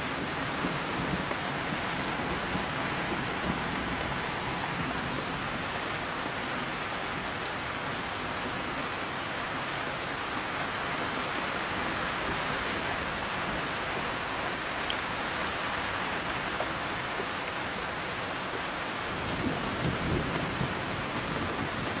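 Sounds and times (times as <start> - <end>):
low rumble of thunder: 0.0 - 6.3, 19.0 - 22.0
heavy rain falling: 0.0 - 22.0.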